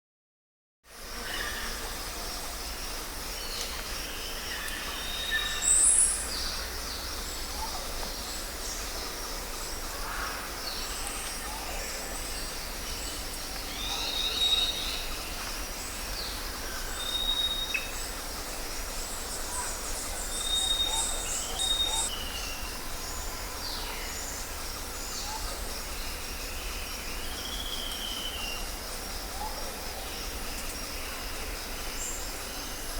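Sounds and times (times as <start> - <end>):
steady background hiss: 0.9 - 32.9
birds calling and whistling: 19.4 - 22.7.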